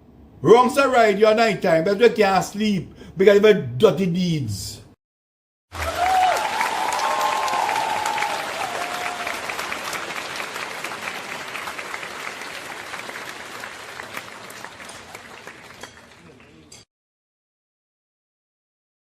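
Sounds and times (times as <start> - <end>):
crowd applause: 5.7 - 16.7.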